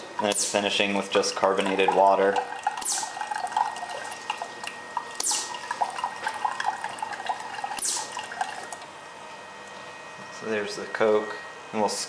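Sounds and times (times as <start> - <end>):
carbonated drink pouring into cup: 1.3 - 8.8.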